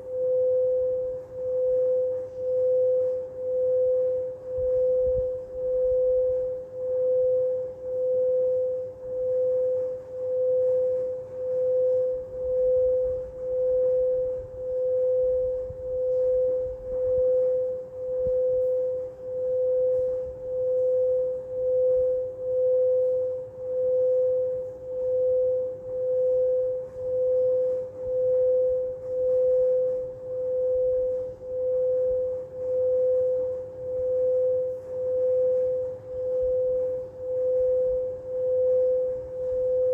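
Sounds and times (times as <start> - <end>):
singing bowl ringing: 0.0 - 39.9.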